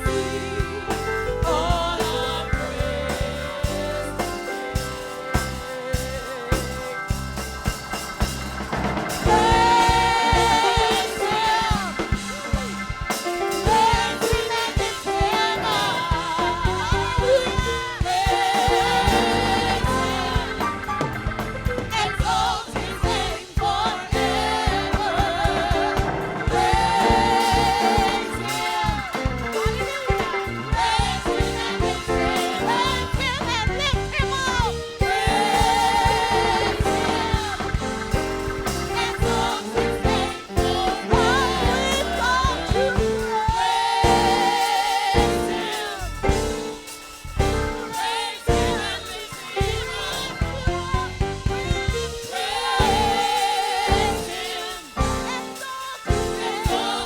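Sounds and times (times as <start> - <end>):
person singing with vibrato: 0.0 - 7.3, 9.2 - 12.9, 21.8 - 38.0, 38.9 - 47.0, 52.2 - 57.0
band with drumbeat and bass: 0.0 - 57.0.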